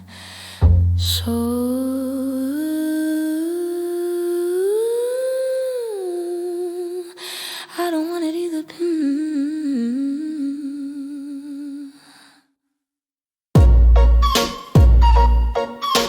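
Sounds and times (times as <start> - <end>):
loud music with heavy bass: 13.6 - 16.0.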